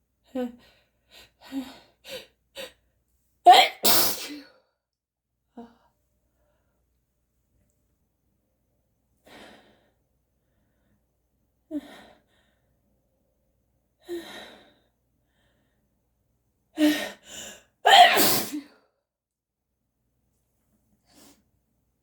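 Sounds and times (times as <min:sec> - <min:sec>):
person sneezing: 0:03.5 - 0:04.4, 0:17.9 - 0:18.7.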